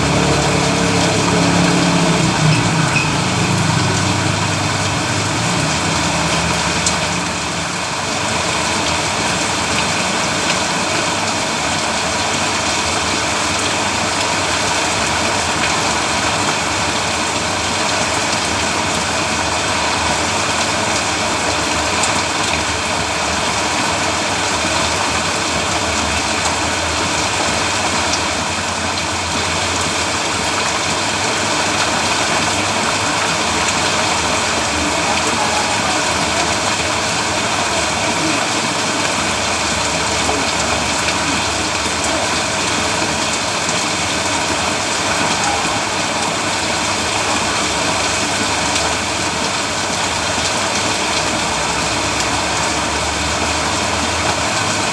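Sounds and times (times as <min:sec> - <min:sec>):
engine-like hum: 0:00.0 - 0:54.9
heavy rain on road: 0:00.0 - 0:54.9.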